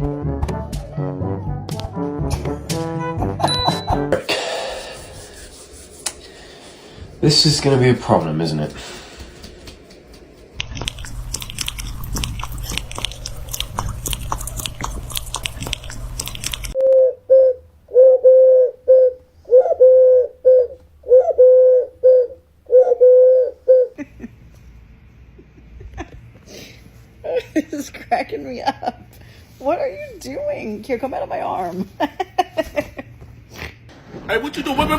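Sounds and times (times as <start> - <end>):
crunching and clicking: 9.4 - 16.8
pigeon cooing: 14.2 - 24.0.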